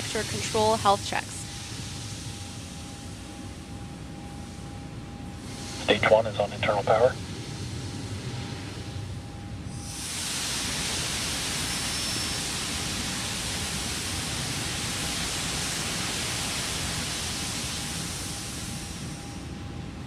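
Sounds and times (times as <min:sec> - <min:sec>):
steady rushing hiss: 0:05.4 - 0:08.8, 0:09.8 - 0:19.2.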